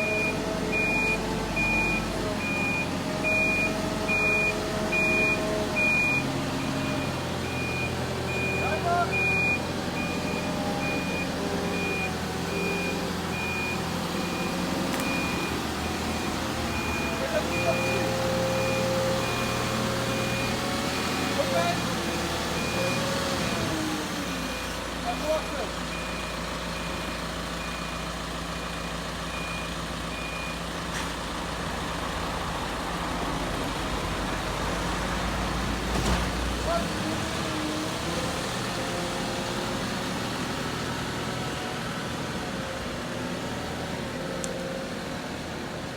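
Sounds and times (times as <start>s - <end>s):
vehicle reversing alarm beeping: 0.0s - 30.8s
diesel engine humming: 0.0s - 45.9s.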